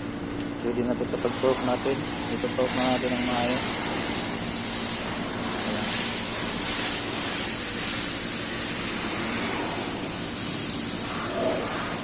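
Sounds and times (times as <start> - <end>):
steady hiss: 0.7 - 12.0.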